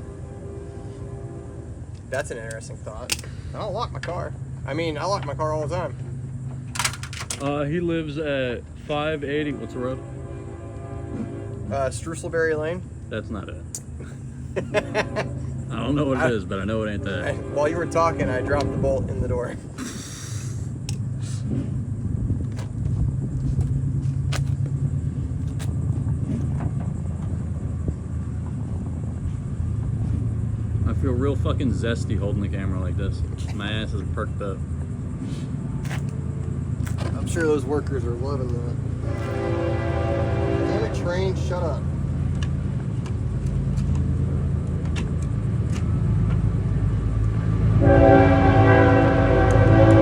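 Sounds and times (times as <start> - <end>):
train horn chord: 0.0 - 2.4, 9.0 - 12.7, 14.8 - 19.4, 39.0 - 41.8, 47.7 - 50.0
low vehicle rumble: 0.0 - 50.0.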